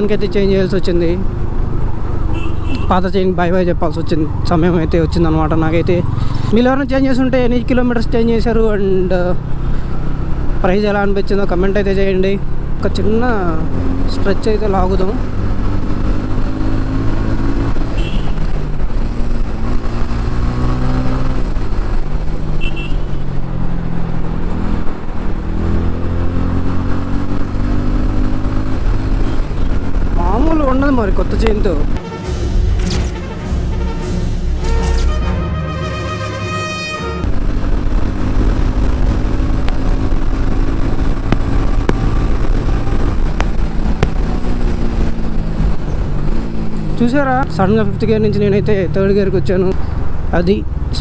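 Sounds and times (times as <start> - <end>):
motorcycle engine accelerating: 12.4 - 32.0, 37.2 - 48.9
motorcycle engine running: 37.2 - 47.0
sharp clicks: 41.2 - 45.2.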